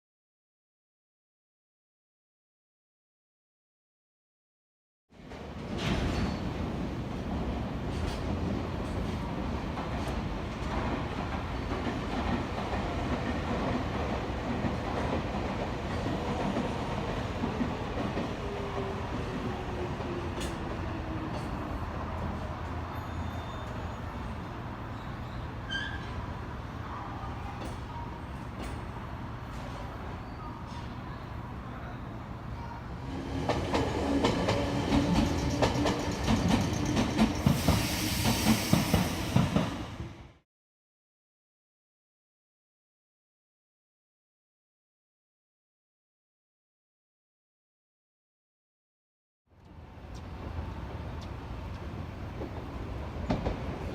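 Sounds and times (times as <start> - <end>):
train wheels rumbling on track: 5.2 - 31.6, 33.0 - 40.4, 49.6 - 53.9
train wheels clacking over rail joints: 33.4 - 39.7
hiss: 37.4 - 39.7.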